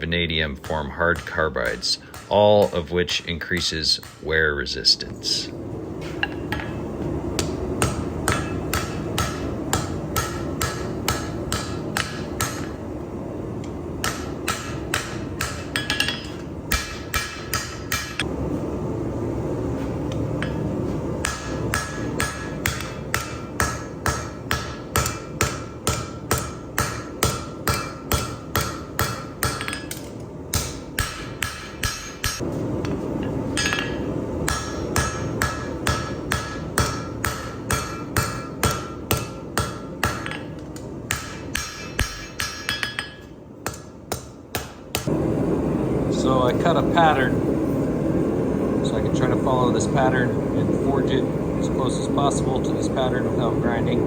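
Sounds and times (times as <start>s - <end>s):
steady low rush: 0.0s - 27.1s, 45.1s - 54.0s
hammer striking steel on anvil: 0.6s - 4.5s, 6.0s - 12.8s, 14.0s - 18.3s, 20.1s - 45.1s.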